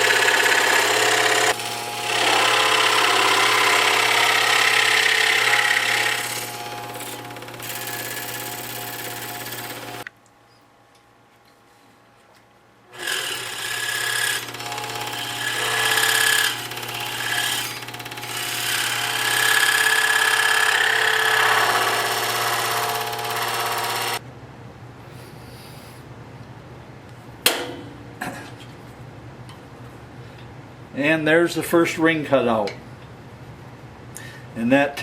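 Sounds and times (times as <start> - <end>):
scroll saw cutting wood: 0.0 - 10.0, 12.9 - 24.2.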